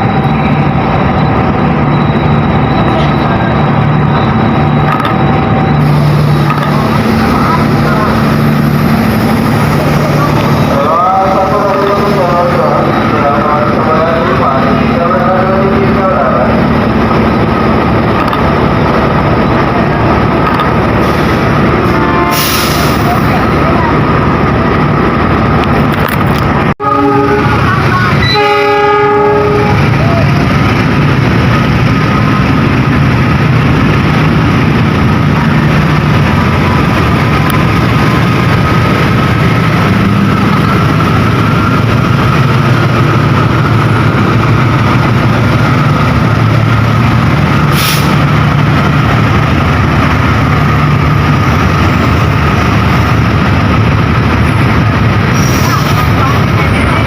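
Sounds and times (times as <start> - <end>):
train wheels rumbling on rails: 0.0 - 57.0
train horn blast: 21.8 - 22.9, 26.8 - 30.0.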